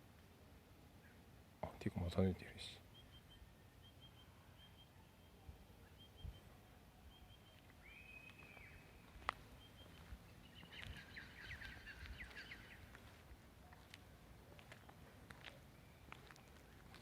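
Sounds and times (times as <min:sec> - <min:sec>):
faint birdsong: 0:00.6 - 0:17.0.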